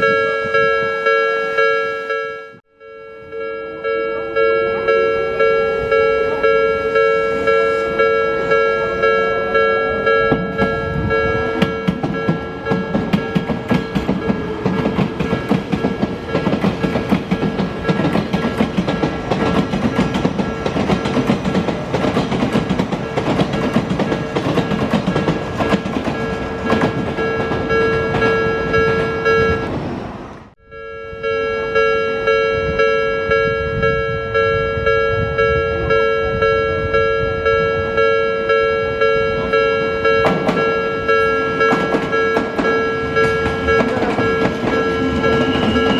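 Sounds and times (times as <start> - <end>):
level crossing warning bell: 0.0 - 29.8, 30.6 - 45.9
train rumbling and clattering: 3.8 - 30.6, 31.7 - 45.9.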